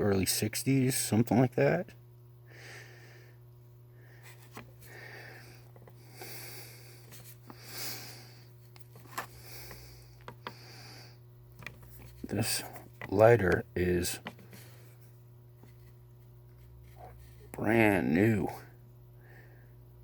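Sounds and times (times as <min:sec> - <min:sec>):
steady low hum: 0:00.0 - 0:20.0
soft handling hisses and rubbing: 0:04.1 - 0:17.6.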